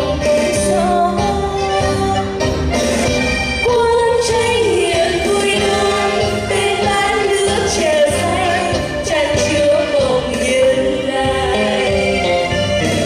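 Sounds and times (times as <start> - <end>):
person singing with vibrato: 0.0 - 2.7, 3.6 - 13.0
band playing a steady beat: 0.0 - 13.0.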